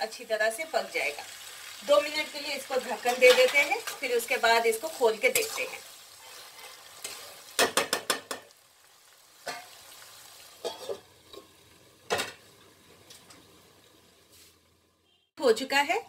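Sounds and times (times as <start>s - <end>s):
food sizzling: 0.0s - 15.3s
metal spatula scraping a pan: 3.0s - 7.9s, 10.6s - 11.5s.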